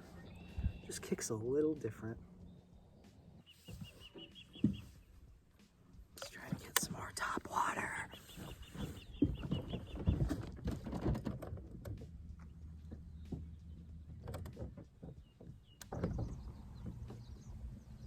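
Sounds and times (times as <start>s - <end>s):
fishing tackle clicks and knocks: 6.2s - 7.6s, 8.4s - 17.3s.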